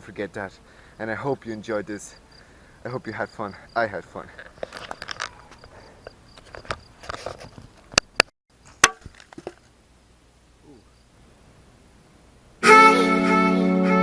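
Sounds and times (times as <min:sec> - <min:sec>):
music with guitar-like tones: 0:12.6 - 0:14.0.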